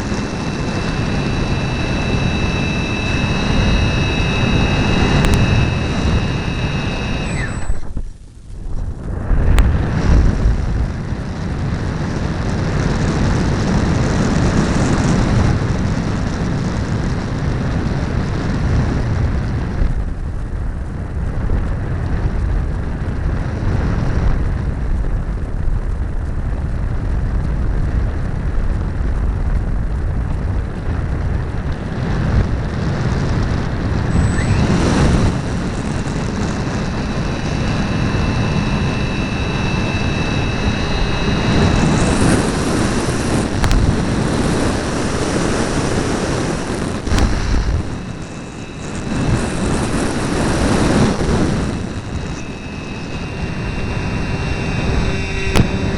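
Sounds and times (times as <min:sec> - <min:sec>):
model airplane motor: 0:00.0 - 0:08.1, 0:32.2 - 0:55.9
wind rushing: 0:00.0 - 0:12.2, 0:33.4 - 0:55.9.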